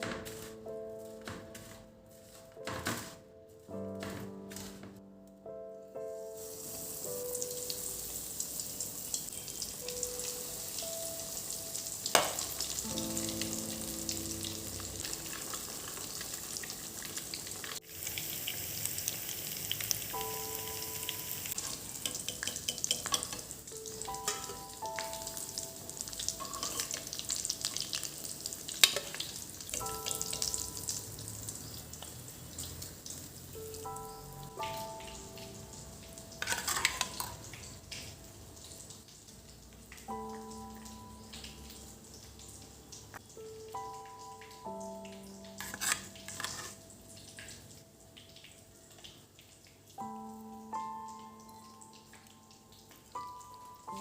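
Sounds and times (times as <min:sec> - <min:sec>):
soft background music: 0:00.0 - 0:54.0.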